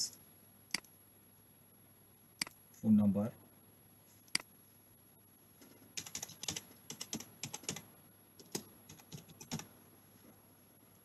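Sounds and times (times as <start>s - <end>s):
typing on keyboard: 6.0s - 9.7s.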